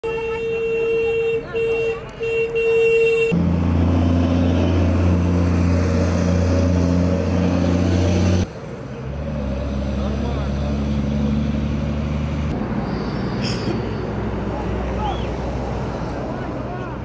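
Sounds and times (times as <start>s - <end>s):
held horn tone: 0.0s - 3.4s
heavy vehicle engine humming: 0.0s - 17.0s
lower vehicle engine hum: 0.0s - 17.0s.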